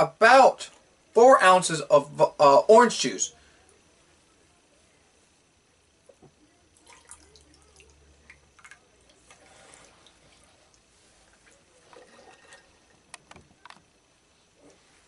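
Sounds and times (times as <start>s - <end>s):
juice pouring into glass: 6.8s - 10.2s, 11.5s - 13.1s.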